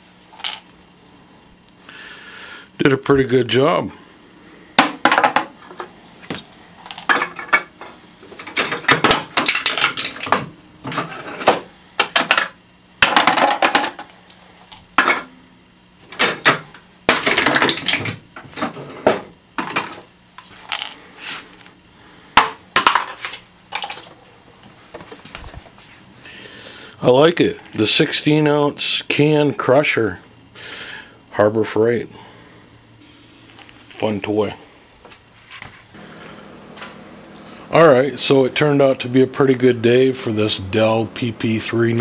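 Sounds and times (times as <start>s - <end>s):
cans crushing with metallic crunches: 6.8s - 14.2s, 16.2s - 18.2s, 22.4s - 24.1s.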